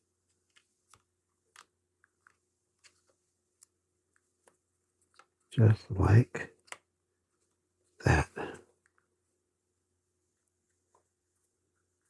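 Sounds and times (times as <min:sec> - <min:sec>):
faint small clicks and taps: 0:00.2 - 0:05.5, 0:06.6 - 0:07.6, 0:10.3 - 0:12.0.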